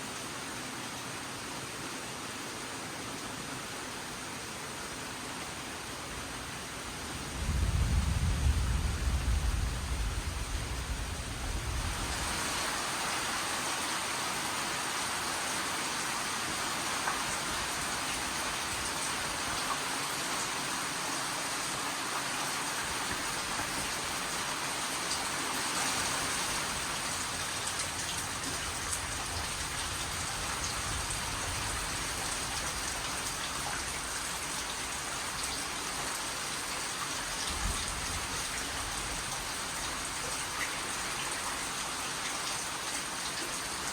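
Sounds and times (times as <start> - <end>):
steady rain falling: 0.0 - 43.9
low rumble: 7.4 - 12.0.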